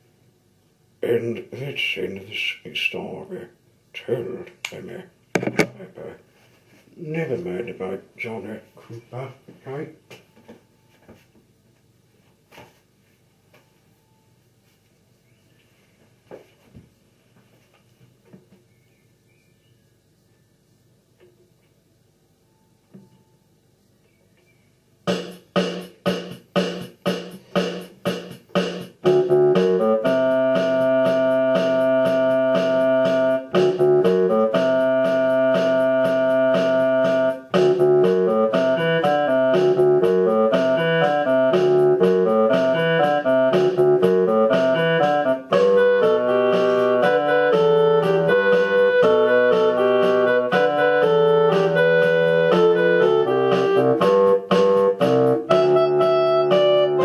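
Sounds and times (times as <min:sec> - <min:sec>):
piano-like keyboard music: 0:25.1 - 0:57.0.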